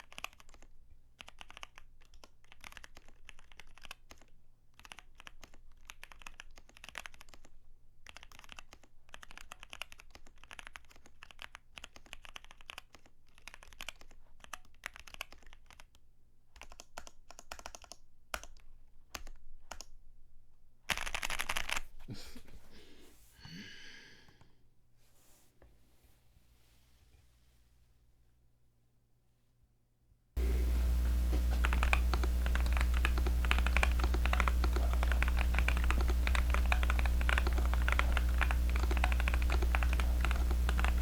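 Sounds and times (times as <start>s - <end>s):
mechanical keyboard typing: 0.0s - 16.0s, 16.6s - 19.9s, 20.9s - 21.8s, 30.4s - 41.0s.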